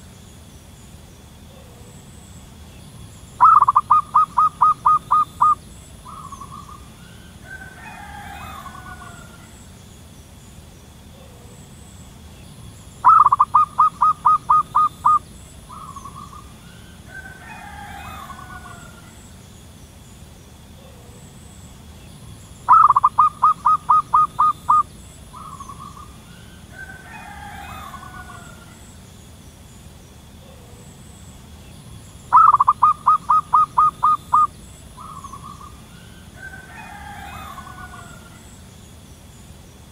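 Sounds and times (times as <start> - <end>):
faint gliding bird calls: 0.0 - 39.9
high insect hiss: 0.0 - 39.9
dove cooing: 3.4 - 9.7, 13.0 - 19.3, 22.7 - 29.0, 32.3 - 38.5.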